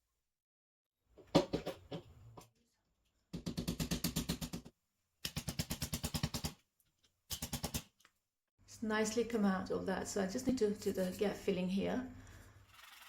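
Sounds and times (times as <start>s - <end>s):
knock and clatter: 1.2s - 2.2s.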